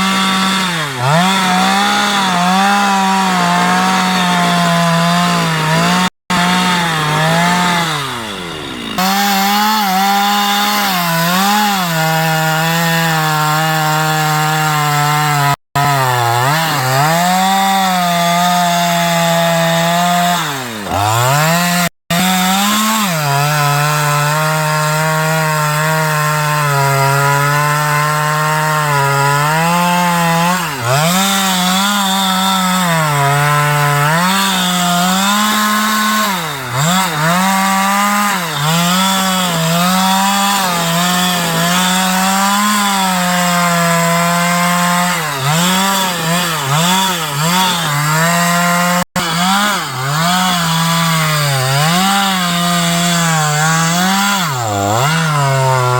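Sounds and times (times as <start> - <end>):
chainsaw cutting wood: 0.0 - 55.9.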